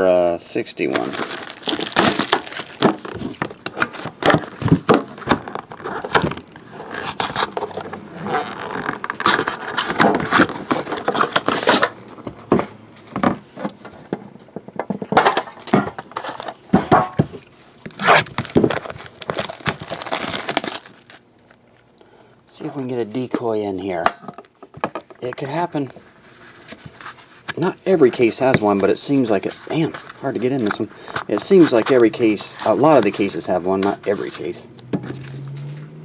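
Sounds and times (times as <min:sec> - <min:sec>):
box scraping and knocking: 0:00.9 - 0:11.9
plastic wrap crinkling and tearing: 0:00.9 - 0:12.0, 0:17.8 - 0:21.6.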